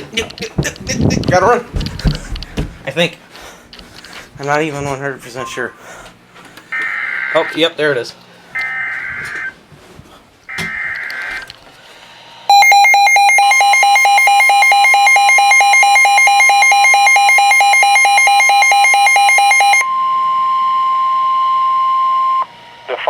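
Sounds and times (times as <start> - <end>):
steady warning alarm tone: 10.5 - 11.4, 12.5 - 22.5
screeching digital data burst: 12.5 - 19.8
rapid harsh pulsing alarm beep: 12.5 - 22.4.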